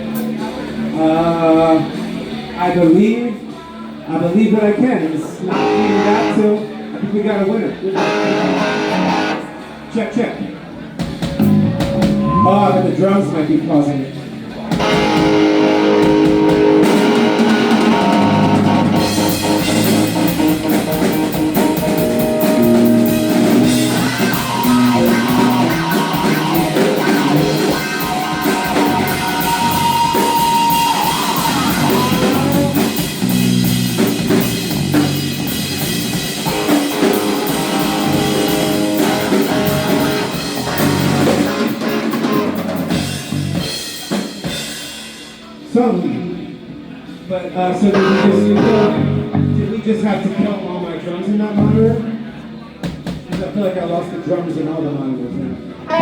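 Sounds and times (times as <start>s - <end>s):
electric guitar: 5.3s - 13.0s, 14.2s - 45.2s, 47.7s - 50.4s, 55.6s - 56.0s
bass guitar: 5.3s - 50.5s, 51.5s - 53.3s, 55.4s - 56.0s
drums and cymbals: 10.9s - 12.8s, 14.6s - 45.7s, 52.8s - 53.6s.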